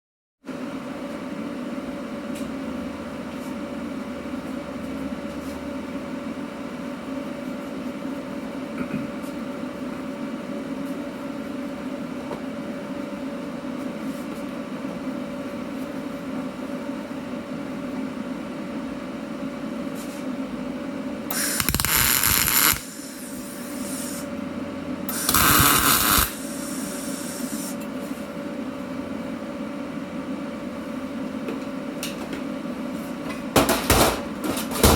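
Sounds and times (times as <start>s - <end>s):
machine hum: 20.7s - 32.7s
welding arc crackle: 21.3s - 22.9s, 25.1s - 26.4s.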